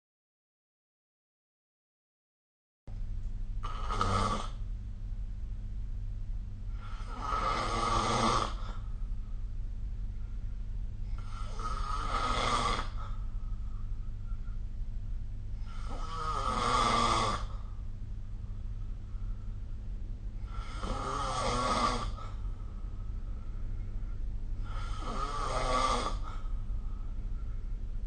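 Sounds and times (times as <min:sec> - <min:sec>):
steady low hum: 0:02.9 - 0:28.0
person snoring: 0:03.6 - 0:04.6, 0:06.7 - 0:08.9, 0:11.0 - 0:13.3, 0:15.6 - 0:17.8, 0:20.4 - 0:22.5, 0:24.6 - 0:26.5.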